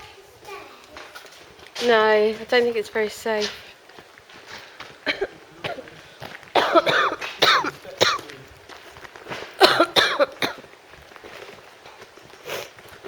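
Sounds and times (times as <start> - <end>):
woman coughing: 5.0 - 5.9, 6.6 - 8.2, 9.6 - 10.6.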